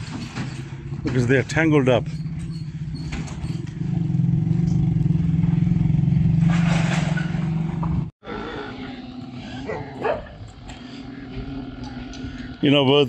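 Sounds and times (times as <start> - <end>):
vehicle engine running: 1.2 - 8.1.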